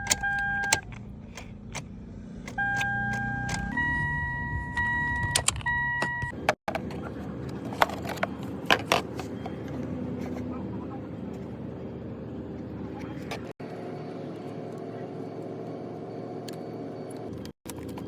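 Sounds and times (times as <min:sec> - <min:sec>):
sharp clicks: 0:00.0 - 0:03.8
warning chime long beeps: 0:02.6 - 0:06.3.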